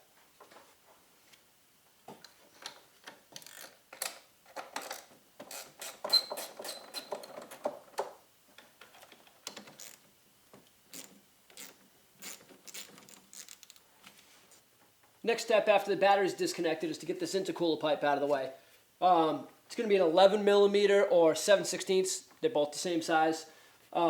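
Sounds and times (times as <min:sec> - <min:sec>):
ratchet clicking: 0:03.4 - 0:03.8, 0:10.9 - 0:13.8.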